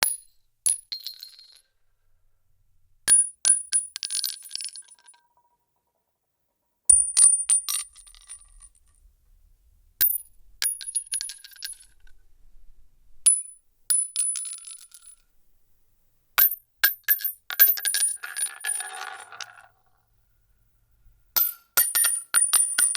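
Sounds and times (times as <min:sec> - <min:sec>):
shell casings clinking on hard surface: 0:00.0 - 0:01.7, 0:03.1 - 0:05.2, 0:06.9 - 0:08.8, 0:13.3 - 0:15.2, 0:16.4 - 0:19.8, 0:21.4 - 0:22.9.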